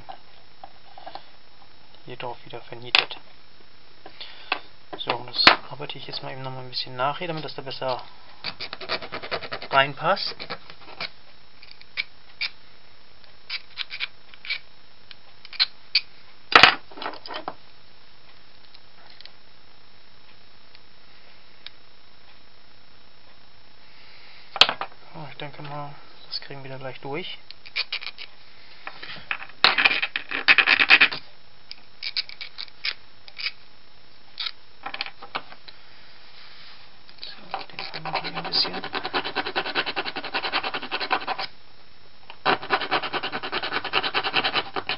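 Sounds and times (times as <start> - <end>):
small metal parts clicking: 27.6 - 28.3, 31.7 - 33.6, 34.4 - 35.1.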